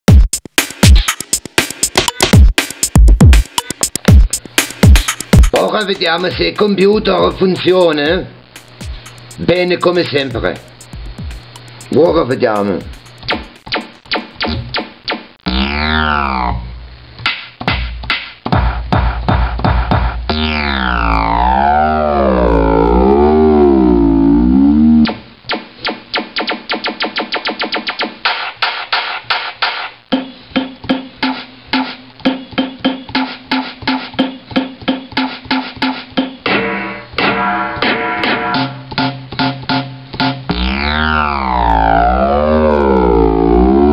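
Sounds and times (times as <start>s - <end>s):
rhythmic pitched percussion beat: 0.1s - 15.2s, 17.6s - 36.6s, 37.2s - 43.9s
falling wobbling pitched tone: 20.3s - 25.2s, 40.5s - 43.9s
swooping siren-like tone: 20.3s - 25.2s, 40.5s - 43.9s
low drone: 20.8s - 25.1s, 40.5s - 43.9s
sustained chord: 20.9s - 25.1s, 40.5s - 43.9s.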